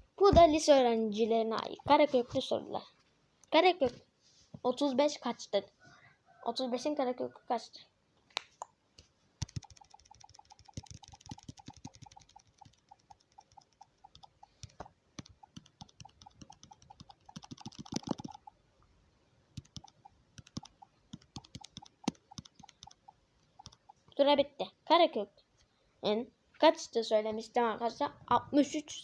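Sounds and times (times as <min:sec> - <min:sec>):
scattered clicks and taps: 0:08.3 - 0:18.6, 0:19.6 - 0:24.2.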